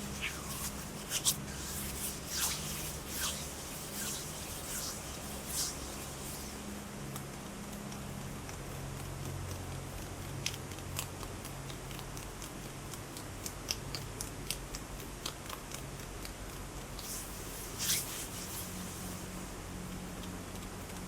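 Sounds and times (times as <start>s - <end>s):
rubbing rustle: 0.0s - 6.8s, 17.0s - 19.6s
low steady hum: 0.0s - 7.0s, 17.0s - 20.1s.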